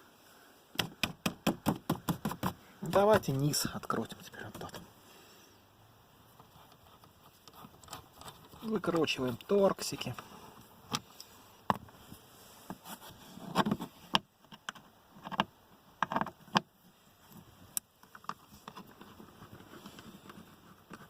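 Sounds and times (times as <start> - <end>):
screwdriver clicking and scraping: 6.4 - 10.3.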